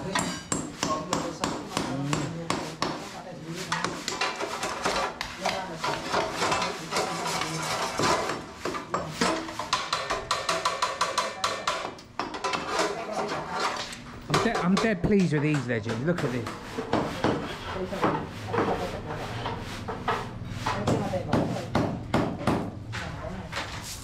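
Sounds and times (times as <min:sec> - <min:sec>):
hand tools knocking and clattering: 0:03.7 - 0:23.8
people talking: 0:17.1 - 0:19.4.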